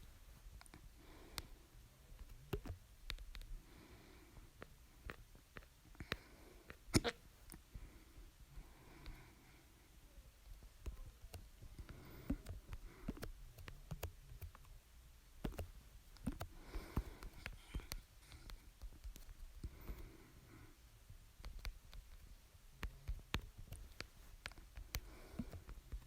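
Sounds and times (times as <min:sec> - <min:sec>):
breathing: 0:00.8 - 0:01.8, 0:03.6 - 0:05.2, 0:05.9 - 0:06.8, 0:07.7 - 0:10.0, 0:11.6 - 0:13.4, 0:16.4 - 0:18.8, 0:19.6 - 0:20.9, 0:24.8 - 0:26.0
small mouth clicks: 0:04.6 - 0:07.6
person hiccupping: 0:06.9 - 0:07.2.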